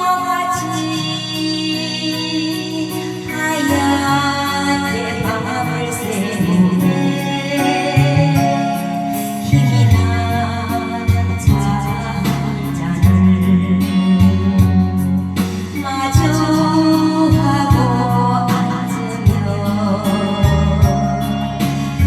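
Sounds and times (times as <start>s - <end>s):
person singing: 0.0s - 22.0s
sustained bass notes: 0.0s - 22.0s
band playing a steady beat: 5.2s - 22.0s.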